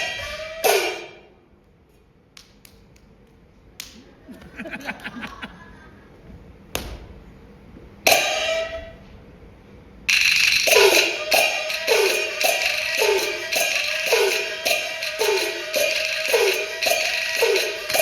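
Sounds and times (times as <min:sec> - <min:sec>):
percussion clicks and strikes: 0:08.0 - 0:08.9, 0:10.1 - 0:18.0
gongs and cymbals playing: 0:08.0 - 0:09.0, 0:10.1 - 0:18.0
cymbal clash with ringing: 0:08.1 - 0:08.8, 0:10.1 - 0:18.0.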